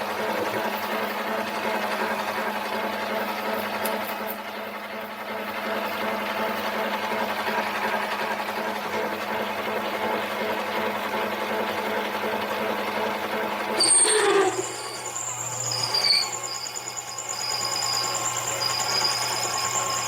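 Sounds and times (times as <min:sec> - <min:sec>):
lathe motor hum: 0:07.0 - 0:20.0
hiss of lathe cutting: 0:13.8 - 0:20.0.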